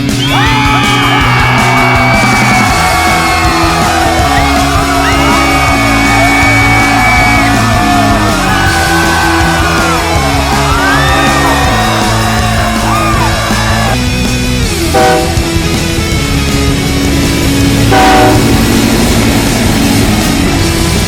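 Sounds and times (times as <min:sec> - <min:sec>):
loud rock music: 0:00.0 - 0:21.0.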